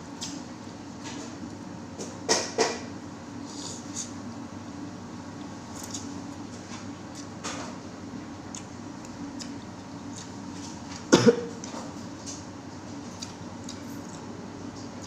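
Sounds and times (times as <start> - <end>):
person coughing: 11.1 - 11.5.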